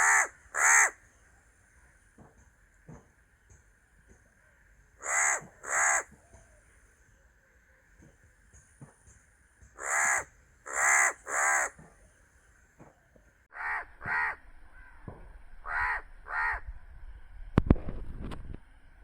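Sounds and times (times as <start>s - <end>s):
crow cawing: 0.0s - 1.0s, 5.0s - 6.1s, 9.8s - 11.8s, 13.5s - 16.6s.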